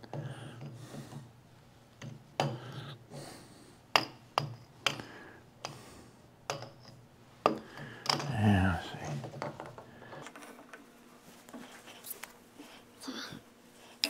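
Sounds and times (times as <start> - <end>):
hand tools tapping on metal: 6.5 - 10.8.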